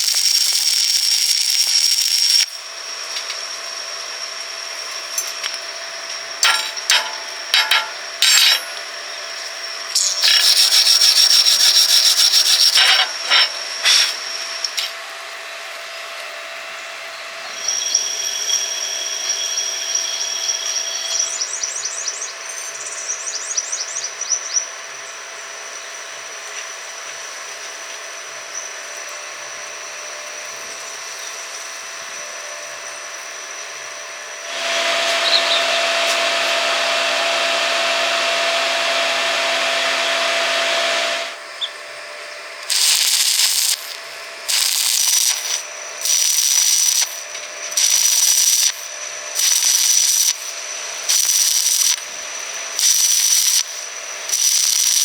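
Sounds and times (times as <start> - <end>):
power tool running: 0.0 - 55.0
short hissing bursts: 10.0 - 13.1, 42.6 - 52.0.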